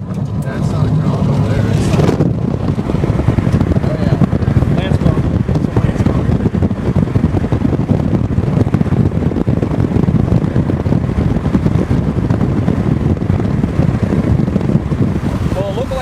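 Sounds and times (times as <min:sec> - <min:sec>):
road noise low rumble: 0:00.0 - 0:16.0
wind buffeting car: 0:00.0 - 0:16.0.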